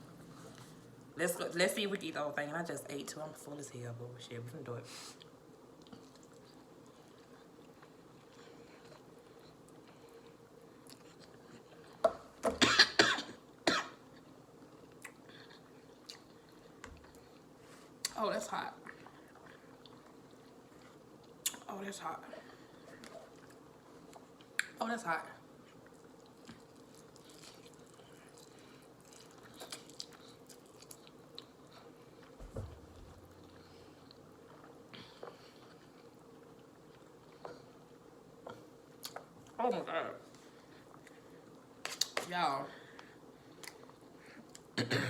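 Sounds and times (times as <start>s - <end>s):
person chewing noodles: 5.2s - 12.0s, 14.0s - 18.1s, 18.8s - 21.6s, 22.5s - 24.7s, 25.5s - 32.4s, 33.3s - 39.6s, 43.4s - 44.7s
person coughing: 12.6s - 14.0s, 44.8s - 45.0s.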